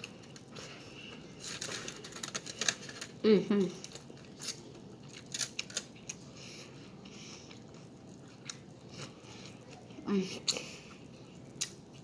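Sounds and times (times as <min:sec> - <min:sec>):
chewing food: 0:03.7 - 0:12.0.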